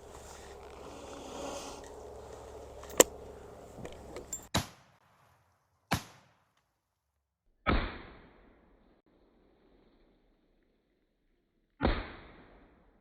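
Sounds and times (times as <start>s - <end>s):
metallic clicks of rifle action: 2.7s - 3.2s.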